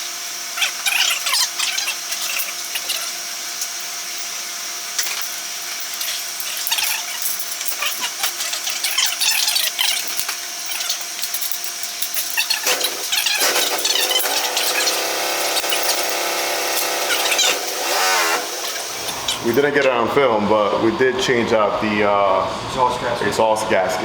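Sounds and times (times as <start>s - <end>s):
wrench clicking and scraping metal: 5.0s - 19.7s.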